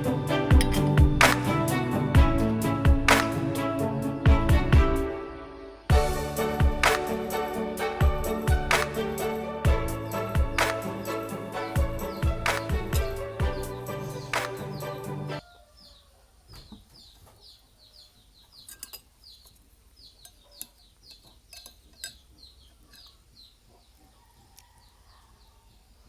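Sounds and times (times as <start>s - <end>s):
background music: 0.0s - 15.4s
fowl chicks peeping: 10.1s - 26.0s.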